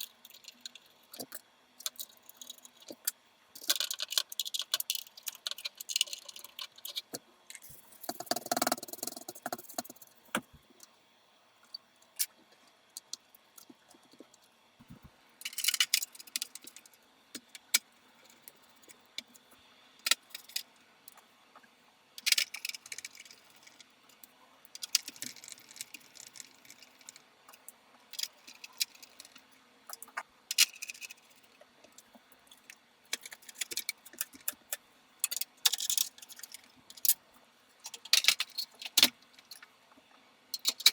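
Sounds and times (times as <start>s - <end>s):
metal parts clicking and rattling: 0.0s - 10.0s, 15.4s - 16.9s, 22.2s - 23.8s, 24.8s - 27.2s, 28.1s - 31.5s, 32.5s - 37.2s, 37.8s - 39.6s, 40.6s - 40.9s.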